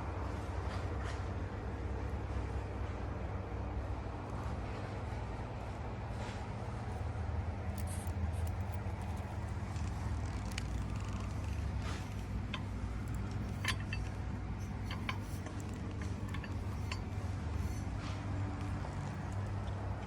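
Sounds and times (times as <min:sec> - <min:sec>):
steady low hum: 0:00.0 - 0:20.0
light clicks and clinks: 0:07.6 - 0:19.8.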